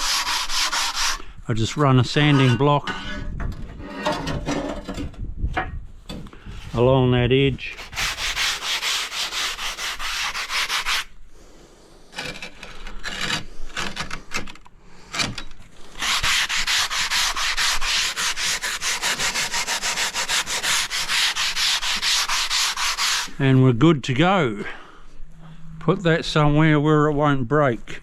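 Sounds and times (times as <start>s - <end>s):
sanding block rubbing tile edge: 0.0s - 1.2s, 7.8s - 11.1s, 16.0s - 23.4s.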